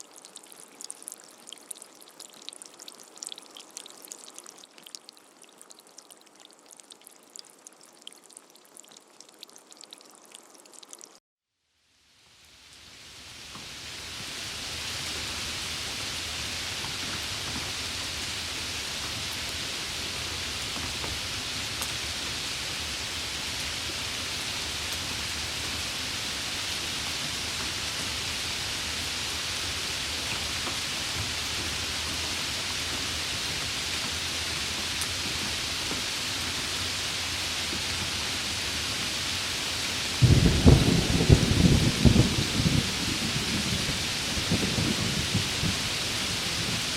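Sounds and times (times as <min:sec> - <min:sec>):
raindrop ticks: 0:00.0 - 0:11.2, 0:20.5 - 0:22.4, 0:29.7 - 0:36.8
steady rain hiss: 0:00.0 - 0:46.9.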